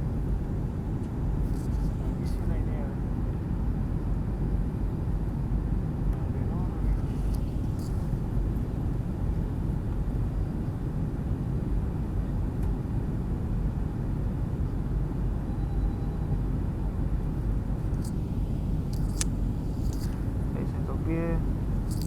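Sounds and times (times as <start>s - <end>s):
aircraft cabin rumble: 0.0s - 22.0s
faint clicks: 18.9s - 20.2s.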